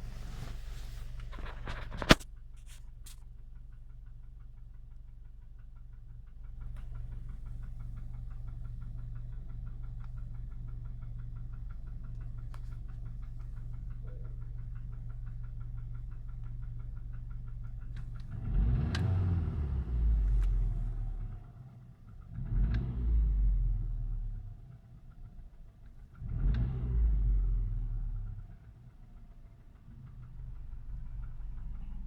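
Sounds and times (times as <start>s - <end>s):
car engine idling with knock: 0.0s - 26.7s, 27.8s - 32.0s
engine revving: 18.2s - 21.6s, 22.3s - 24.4s, 26.2s - 28.3s.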